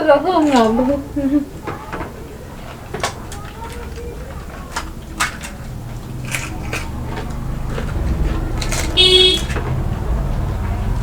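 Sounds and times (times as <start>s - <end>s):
street traffic rumble: 0.0s - 11.0s
sharp crunchy clicks: 2.6s - 10.2s
high horn honk: 7.3s - 9.8s.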